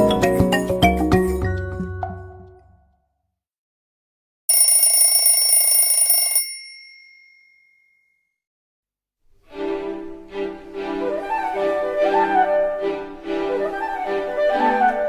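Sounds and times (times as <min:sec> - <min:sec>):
ringing phone alert tone: 0:04.5 - 0:08.0.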